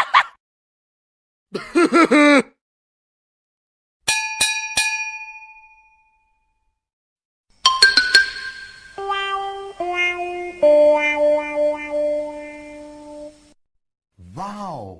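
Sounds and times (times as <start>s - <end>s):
bell-like dings: 4.1s - 6.7s, 7.6s - 9.0s.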